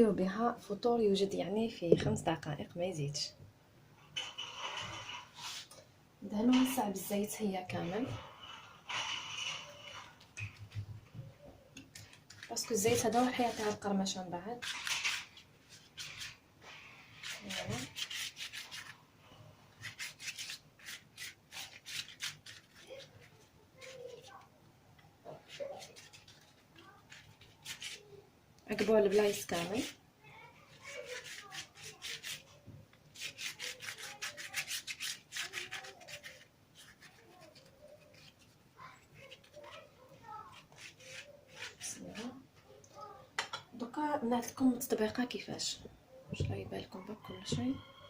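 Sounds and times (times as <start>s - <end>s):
brush rubbing over pastry: 4.4s - 5.7s, 12.3s - 24.5s, 25.2s - 42.8s.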